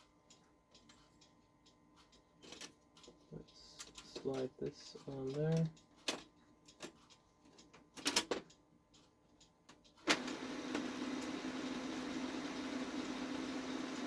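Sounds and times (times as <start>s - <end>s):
plastic clicks and clacks: 3.8s - 9.1s
printer motor humming: 10.1s - 14.0s.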